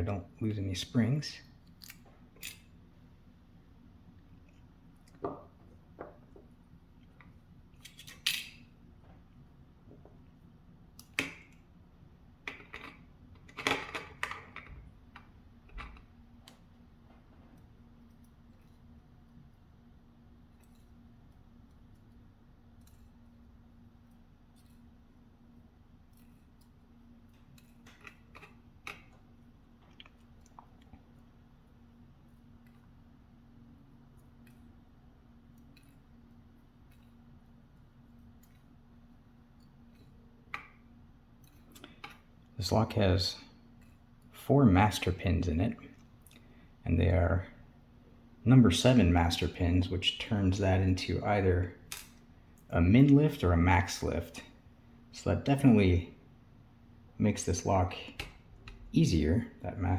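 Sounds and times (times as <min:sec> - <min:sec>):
faint steady hum: 0:00.0 - 0:59.9
small metal lock parts clicking: 0:01.8 - 0:02.7, 0:07.8 - 0:08.6.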